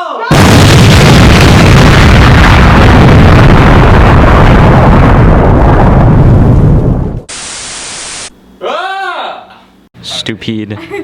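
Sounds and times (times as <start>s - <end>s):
distorted explosion rumble: 0.3s - 8.3s.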